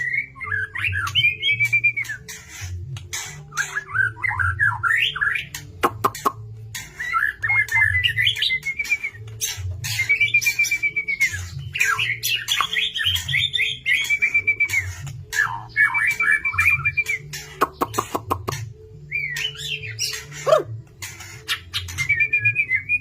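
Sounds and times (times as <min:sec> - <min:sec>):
bird whistling and warbling: 0:00.0 - 0:23.0
sharp bird clicks: 0:17.3 - 0:18.7.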